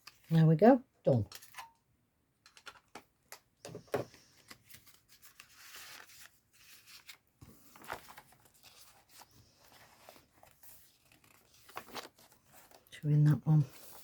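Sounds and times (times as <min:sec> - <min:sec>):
paper pages turning: 0:04.1 - 0:12.9, 0:13.7 - 0:14.0.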